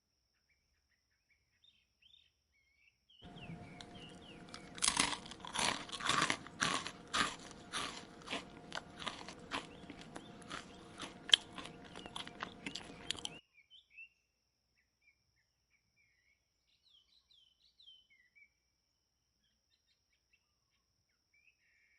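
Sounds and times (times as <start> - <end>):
faint bird chirps: 0.2 - 4.8, 9.4 - 18.8
chewing and tearing grass: 3.3 - 13.4.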